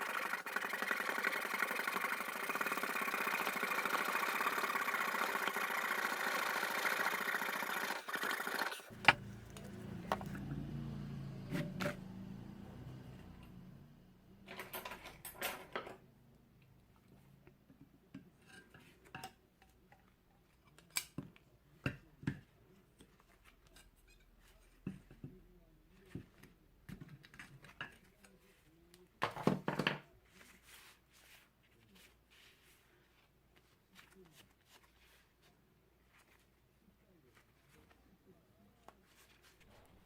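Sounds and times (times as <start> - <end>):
tools and wood clicking: 7.2 - 10.4
wood scraping: 8.1 - 10.4.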